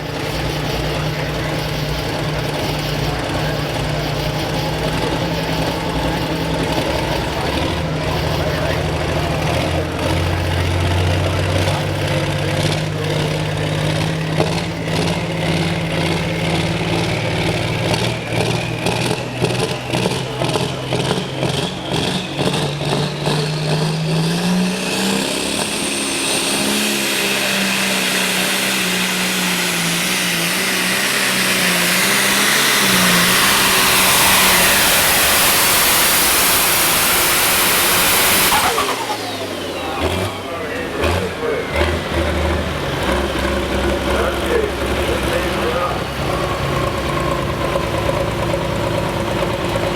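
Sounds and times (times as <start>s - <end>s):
turbo whine rising in pitch: 0.0s - 40.7s
tractor diesel engine under load: 0.0s - 49.9s.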